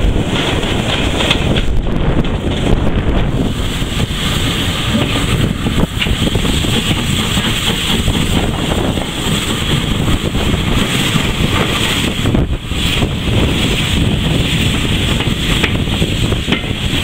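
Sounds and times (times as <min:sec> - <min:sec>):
train wheels rumbling on rail: 0:00.0 - 0:17.0.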